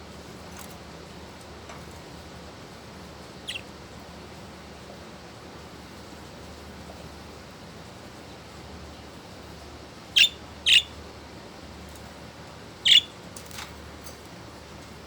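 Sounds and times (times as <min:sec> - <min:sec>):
steady background hiss: 0:00.0 - 0:15.0
budgerigar calls: 0:03.4 - 0:03.7, 0:10.2 - 0:11.0, 0:12.8 - 0:13.2
faint bird chirps: 0:03.4 - 0:03.7, 0:10.2 - 0:11.0, 0:12.8 - 0:13.2.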